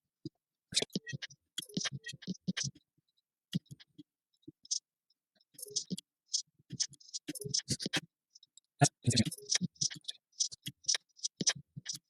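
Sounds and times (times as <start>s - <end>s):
mouse and keyboard clicks: 9.3s - 12.0s.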